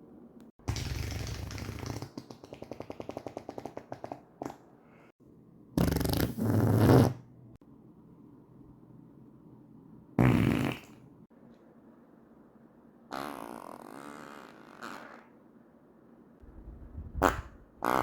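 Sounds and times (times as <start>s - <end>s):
farts sputtering: 0.7s - 4.6s, 5.8s - 7.2s, 10.2s - 11.0s, 13.1s - 15.3s, 17.2s - 18.0s.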